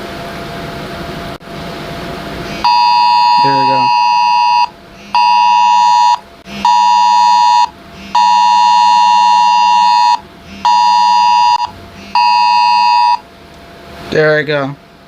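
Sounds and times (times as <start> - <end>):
buzzing two-tone alarm beeping: 2.5 - 13.2.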